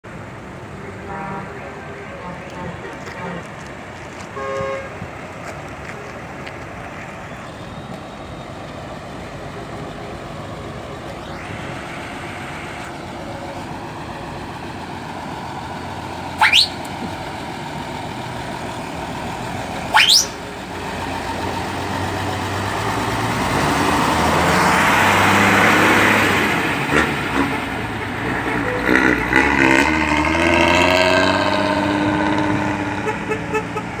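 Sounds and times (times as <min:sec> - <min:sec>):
bus diesel engine rumbling: 0:00.0 - 0:34.0
sharp loud chirps: 0:16.4 - 0:16.8, 0:19.9 - 0:20.5.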